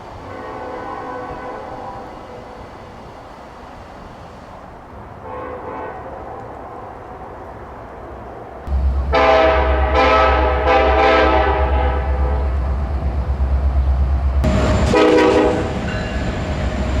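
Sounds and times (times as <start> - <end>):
locomotive air horn blasts: 0.2 - 2.4, 5.2 - 6.3, 8.7 - 12.8, 14.4 - 15.8
low rumble: 8.7 - 17.0.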